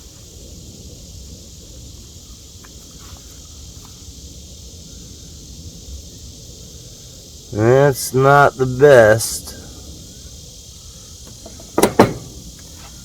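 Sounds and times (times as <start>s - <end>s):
high insect-like hiss: 0.0s - 13.0s.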